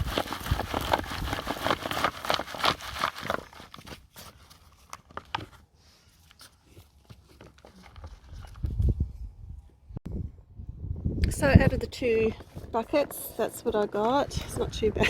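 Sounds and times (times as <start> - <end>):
soil and potatoes rustling: 0.0 - 9.2.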